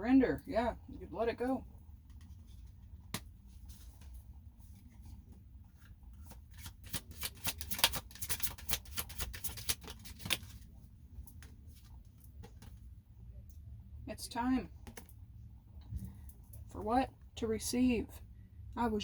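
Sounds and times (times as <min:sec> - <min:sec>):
rapid card flicks: 0:06.6 - 0:10.5.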